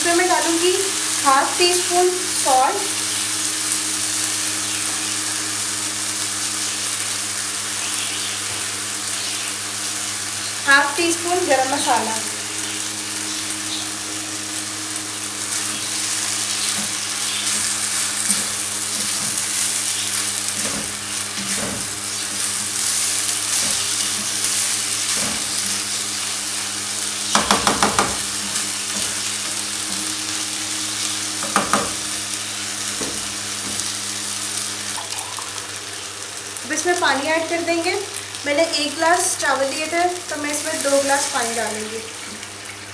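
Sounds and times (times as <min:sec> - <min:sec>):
rice sizzling in hot oil: 0:00.0 - 0:42.9
spoon knocking against pan: 0:27.3 - 0:28.3, 0:31.4 - 0:32.1.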